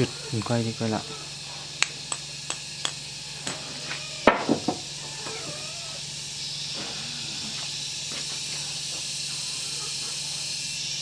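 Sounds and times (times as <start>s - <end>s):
steady low hum and hiss: 0.0s - 11.0s
sharp knocks: 4.2s - 5.4s.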